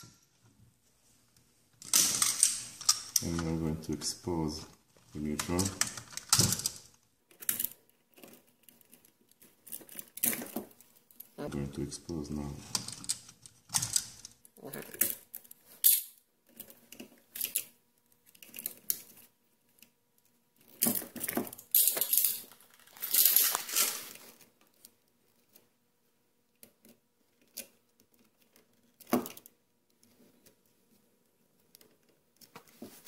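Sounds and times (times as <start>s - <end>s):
wire insulation crunching and scraping: 20.6s - 25.7s.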